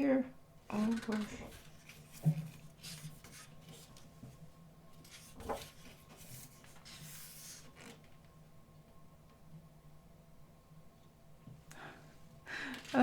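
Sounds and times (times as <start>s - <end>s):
book pages rustling: 1.0s - 4.4s, 5.0s - 8.1s.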